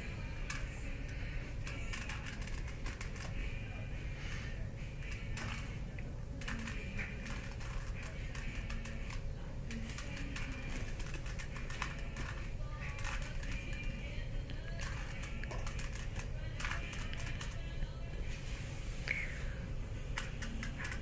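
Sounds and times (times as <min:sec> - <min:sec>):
low background hum: 0:00.0 - 0:21.0
puzzle cube plastic clicks: 0:20.2 - 0:21.0.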